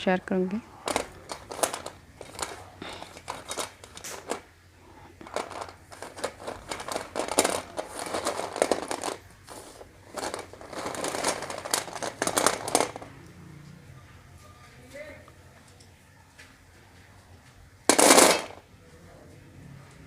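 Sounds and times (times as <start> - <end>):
packaging rustling and crinkling: 0.8 - 4.5, 5.2 - 13.1.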